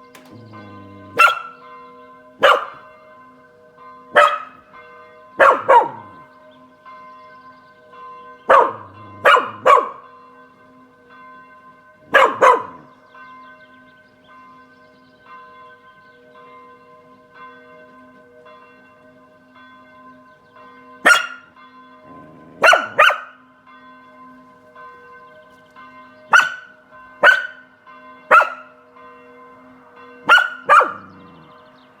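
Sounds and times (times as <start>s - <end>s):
church bells ringing: 0.0s - 32.0s
dog barking: 0.2s - 1.6s, 2.4s - 2.9s, 4.1s - 4.6s, 5.4s - 6.2s, 8.5s - 10.0s, 12.1s - 12.9s, 21.0s - 21.5s, 22.1s - 23.4s, 26.3s - 27.6s, 28.3s - 28.7s, 30.2s - 31.3s.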